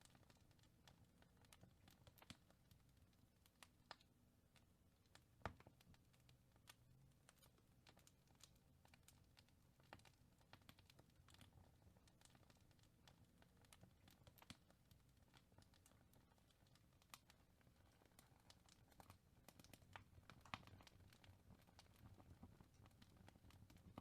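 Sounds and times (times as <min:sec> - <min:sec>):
wood fire crackling: 0:00.0 - 0:24.0.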